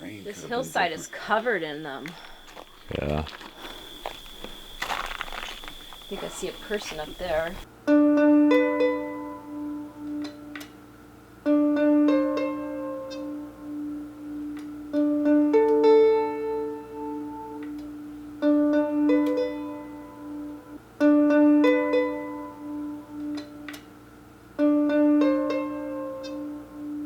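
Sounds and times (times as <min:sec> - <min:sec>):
plucked string notes: 0:06.3 - 0:27.0.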